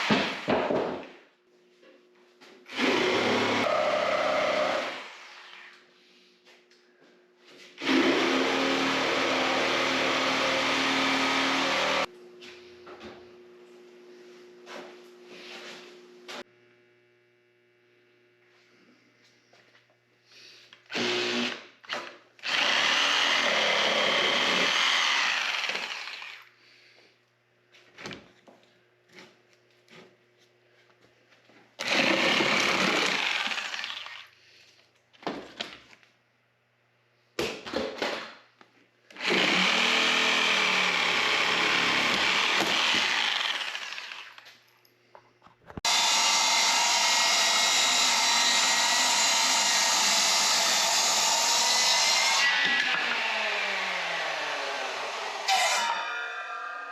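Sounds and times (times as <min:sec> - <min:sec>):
handheld electric power tool: 0:02.7 - 0:05.6, 0:07.8 - 0:12.1, 0:20.8 - 0:26.5, 0:31.8 - 0:34.3, 0:39.1 - 0:44.6, 0:45.8 - 0:56.9.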